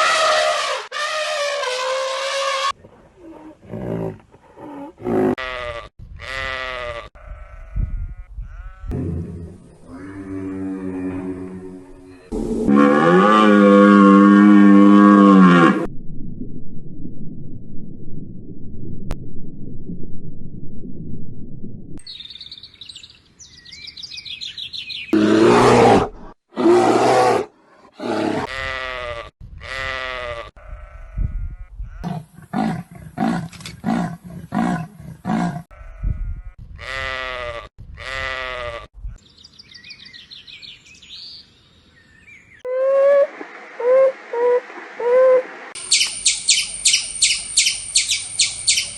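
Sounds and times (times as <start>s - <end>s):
high chirps: 45.8s - 48.9s
high squeaky animal calls: 45.8s - 48.9s.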